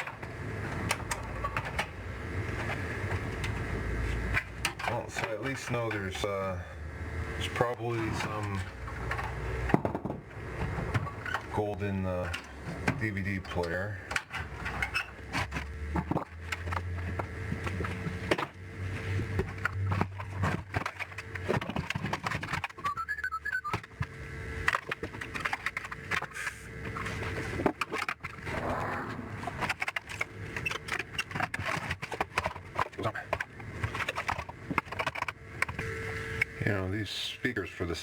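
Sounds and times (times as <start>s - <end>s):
clicks and rattles of plastic casing: 29.6s - 35.8s.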